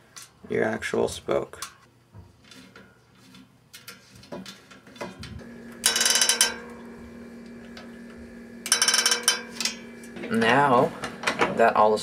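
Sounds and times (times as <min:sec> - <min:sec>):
steady hum: 0:05.0 - 0:12.0
rapid ratcheting buzz: 0:05.4 - 0:07.1, 0:08.6 - 0:10.2.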